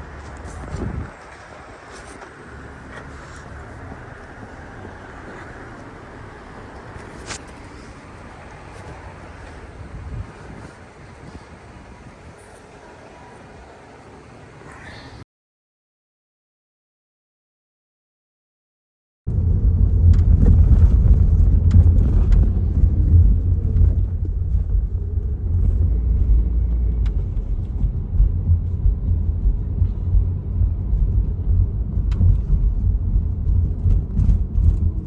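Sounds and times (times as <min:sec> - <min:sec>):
car road rumble: 0:00.0 - 0:15.2, 0:19.3 - 0:35.0.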